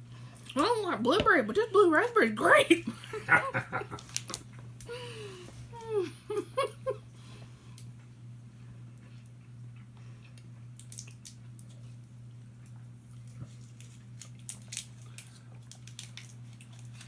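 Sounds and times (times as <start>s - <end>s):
mouth chewing candy: 12.6s - 17.0s.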